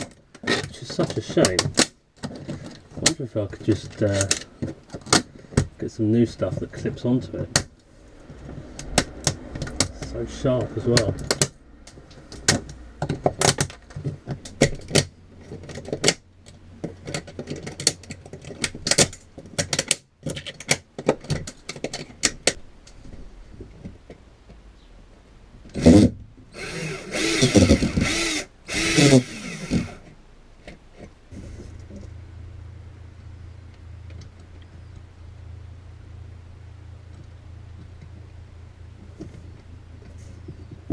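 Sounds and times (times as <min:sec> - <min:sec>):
plastic conduit clicking and snapping: 0:00.0 - 0:05.8, 0:08.7 - 0:10.2, 0:10.9 - 0:23.0
low steady hum: 0:00.0 - 0:40.9
mechanical whirr: 0:25.8 - 0:30.0.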